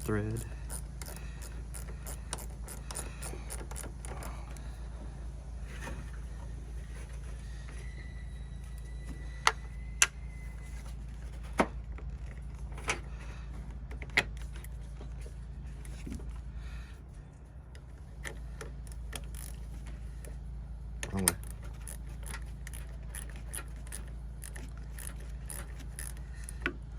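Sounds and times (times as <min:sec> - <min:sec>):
steady low hum: 0:00.0 - 0:26.9.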